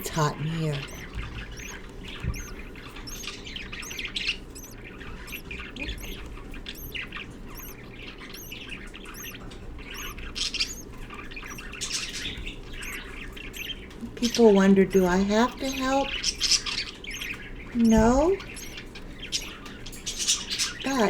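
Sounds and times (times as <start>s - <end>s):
thin high peep: 0.0s - 7.0s, 7.6s - 10.8s
budgerigars chirping: 0.0s - 21.0s.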